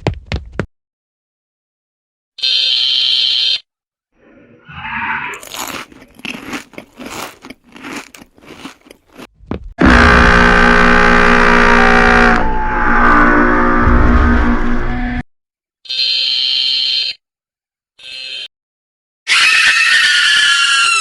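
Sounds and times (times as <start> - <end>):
cartoon crunching bite hits: 5.3 - 10.4.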